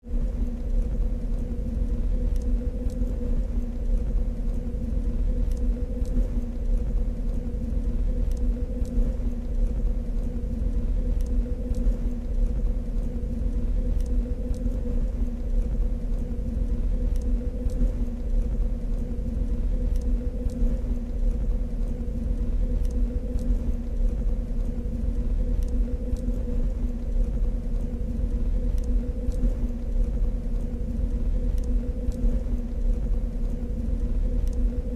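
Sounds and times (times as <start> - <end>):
deep rumble: 0.0 - 34.9
low machine hum: 0.0 - 34.9
faint ticks: 0.1 - 34.9.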